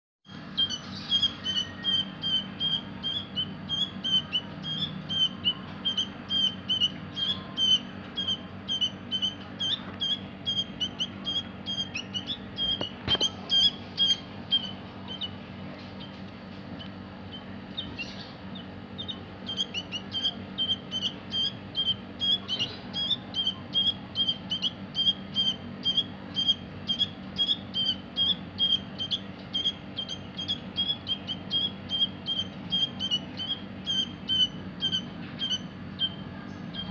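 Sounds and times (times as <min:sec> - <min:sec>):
baby songbird chirping: 0:00.3 - 0:36.9.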